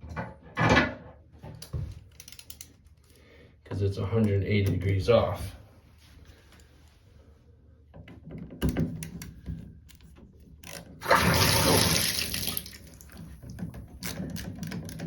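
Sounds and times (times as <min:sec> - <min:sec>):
shower water rushing: 0:11.0 - 0:13.2.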